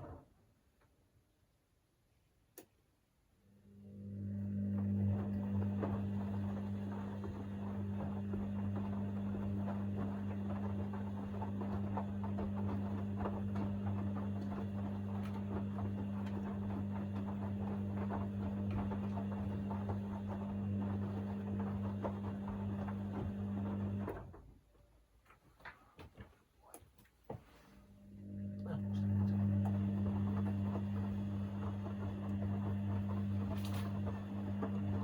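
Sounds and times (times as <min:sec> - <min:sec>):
washing machine motor humming: 0:03.5 - 0:24.7, 0:27.5 - 0:35.0
laundry tumbling and sloshing: 0:04.8 - 0:24.7, 0:27.2 - 0:35.0.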